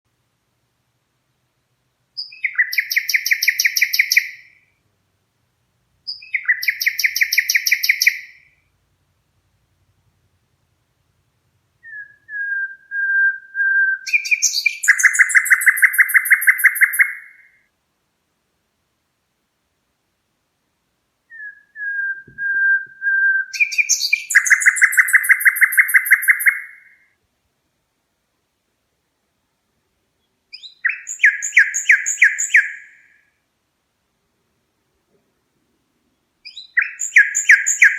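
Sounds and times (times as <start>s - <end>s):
parrot whistled trills: 21.3s - 26.8s.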